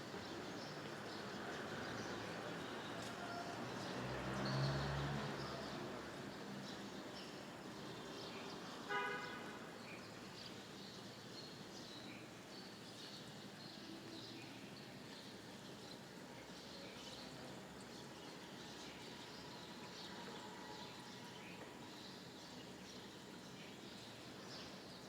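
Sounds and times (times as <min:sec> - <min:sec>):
vehicle horn toot: 0:08.9 - 0:09.4.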